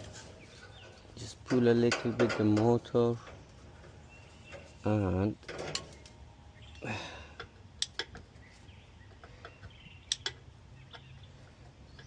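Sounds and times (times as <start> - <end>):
washer parts clicking and knocking: 1.5 - 2.8.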